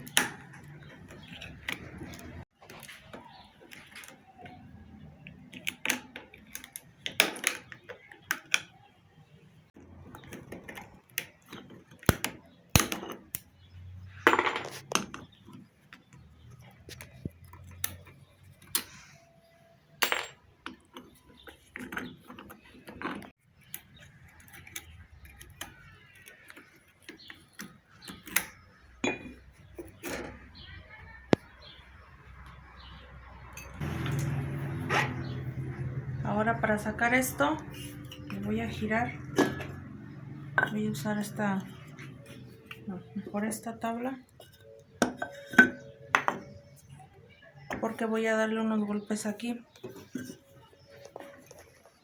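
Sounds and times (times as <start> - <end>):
tools tapping on metal: 28.1 - 30.4, 37.2 - 43.6, 44.3 - 47.0.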